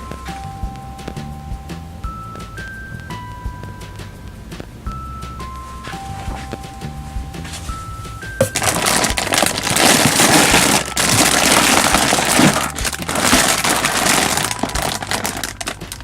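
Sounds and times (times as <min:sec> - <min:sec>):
plastic packet crinkling: 0:08.4 - 0:16.0.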